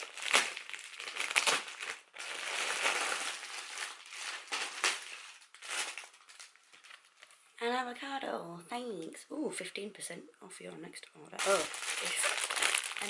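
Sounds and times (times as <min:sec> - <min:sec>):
parcel wrapping rustling and crackling: 0:00.0 - 0:07.6, 0:11.4 - 0:13.0.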